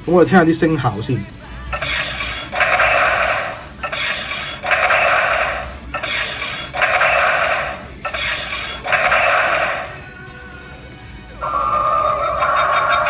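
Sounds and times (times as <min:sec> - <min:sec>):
toy robot buzzy electronic tone: 0:01.7 - 0:10.1, 0:11.4 - 0:13.0.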